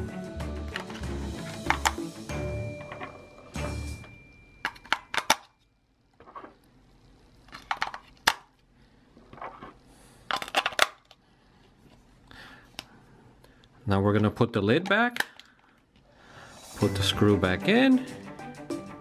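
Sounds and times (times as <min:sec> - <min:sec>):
batteries clicking into compartment: 0:00.7 - 0:02.0, 0:04.6 - 0:05.6, 0:10.3 - 0:11.2.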